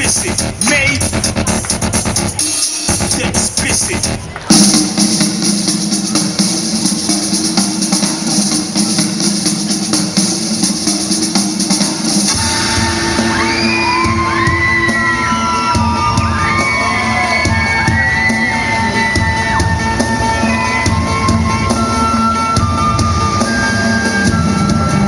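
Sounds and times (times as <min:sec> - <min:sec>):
high gliding melody: 0:00.0 - 0:04.3, 0:12.3 - 0:25.0
kick drum and bass: 0:00.0 - 0:05.0
fast hi-hat percussion: 0:00.0 - 0:25.0
held low synth chord: 0:01.2 - 0:04.2.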